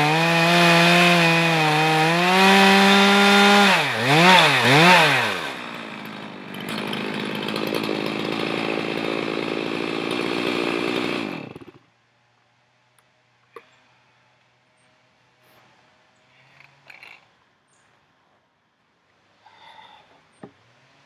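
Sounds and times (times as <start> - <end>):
chainsaw revving and idling: 0.0 - 11.9.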